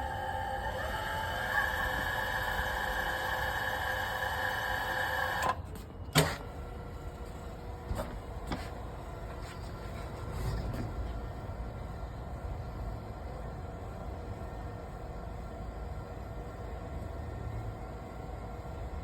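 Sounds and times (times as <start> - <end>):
electric drive whining: 0.0 - 5.6.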